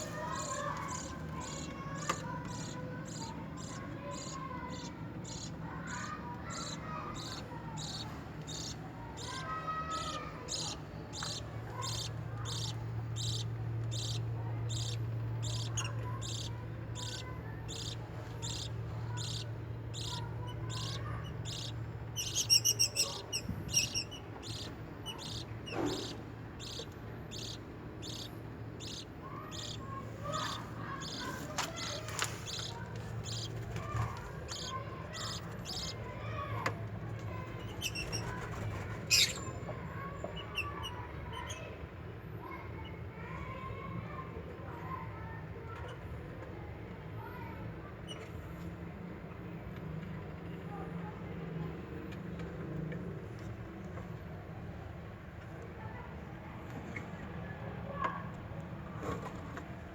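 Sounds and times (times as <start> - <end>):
bird chick cheeping: 0.0 - 36.0.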